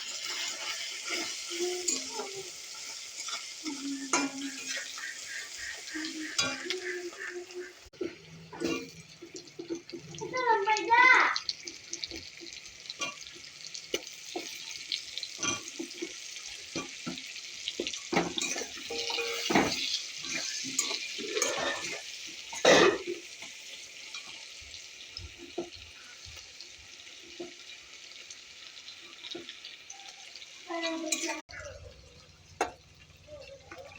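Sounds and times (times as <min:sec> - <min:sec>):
meat sizzling in a pot: 0:00.0 - 0:33.9
spoon scraping a pot: 0:04.0 - 0:07.4, 0:18.2 - 0:22.0.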